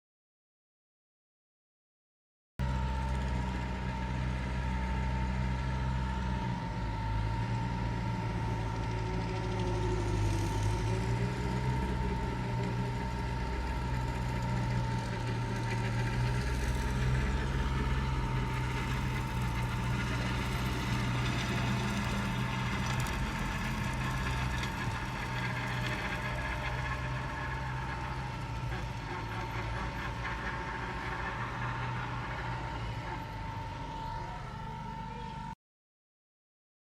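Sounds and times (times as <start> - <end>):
tractor engine droning: 2.6 - 35.6
thin whine: 17.2 - 35.6.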